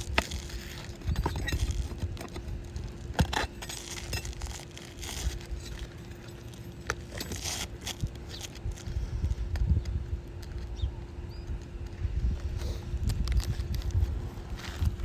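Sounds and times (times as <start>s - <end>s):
shingles clicking and crinkling: 0.0s - 8.9s
steady low rumble: 0.0s - 15.0s.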